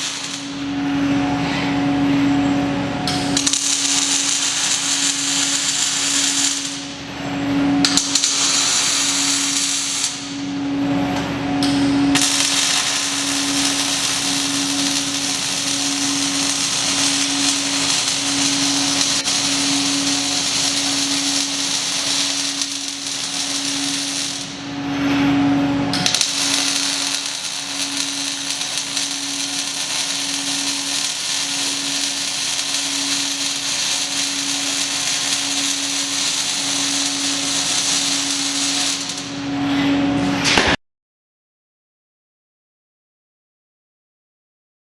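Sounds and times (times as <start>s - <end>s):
welding arc hissing and crackling: 0.0s - 0.9s, 3.1s - 7.0s, 7.8s - 10.3s, 12.1s - 24.8s, 25.9s - 39.5s.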